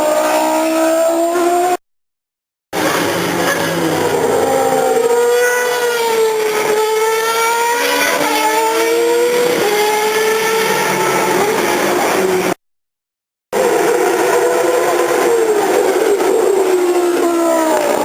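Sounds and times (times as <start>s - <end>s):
racing car engine at high revs: 0.0s - 1.8s, 2.8s - 12.6s, 13.6s - 18.0s.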